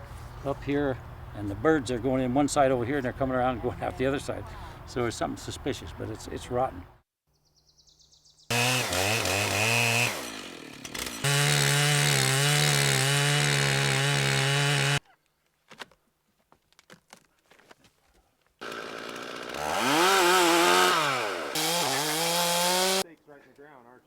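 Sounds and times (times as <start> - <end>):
chainsaw revving: 8.5 - 15.0, 18.6 - 23.0.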